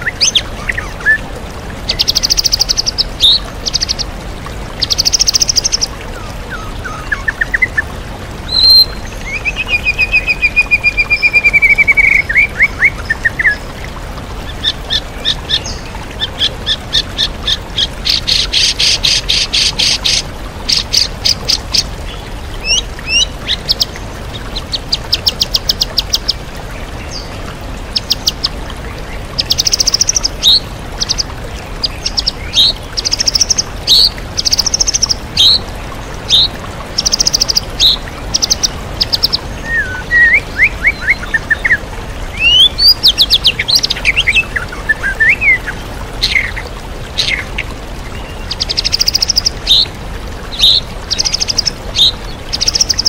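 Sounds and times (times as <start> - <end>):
waterfall rushing: 0.0 - 53.0
bird singing trills and whistles: 36.3 - 41.8.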